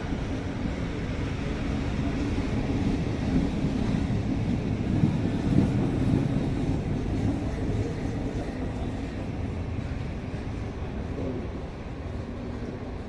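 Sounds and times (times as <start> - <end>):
electric train rumbling: 0.0 - 13.0.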